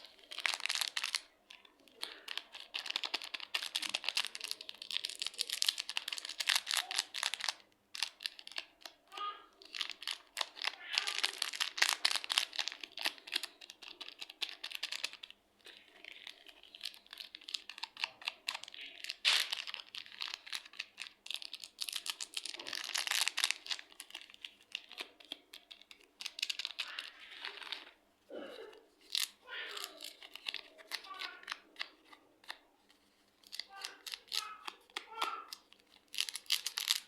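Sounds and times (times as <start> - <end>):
slime squished by hand: 17.4 - 20.6.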